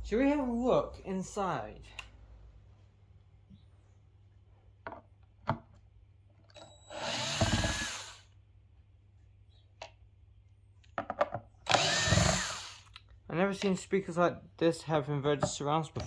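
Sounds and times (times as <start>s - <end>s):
cordless drill running: 6.6s - 8.3s, 11.7s - 12.9s.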